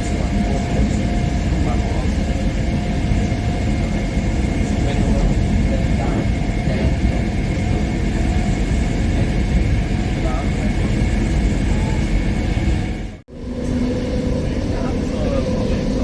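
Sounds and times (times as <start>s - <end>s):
train wheels rumbling: 0.0s - 16.0s.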